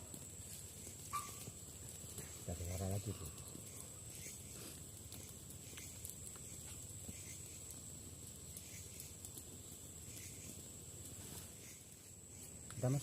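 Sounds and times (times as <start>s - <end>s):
high-pitched insect drone: 3.2s - 7.8s.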